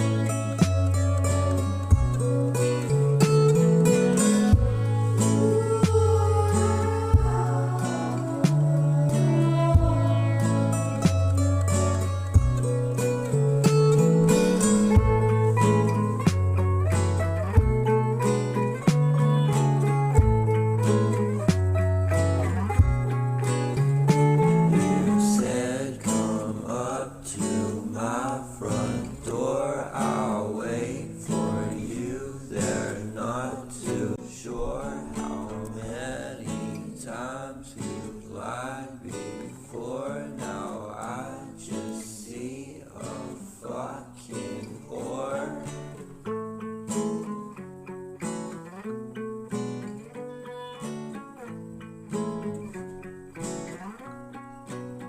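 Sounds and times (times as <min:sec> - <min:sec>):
bending melody line: 0:00.0 - 0:25.8
acoustic guitar music: 0:00.0 - 0:55.0.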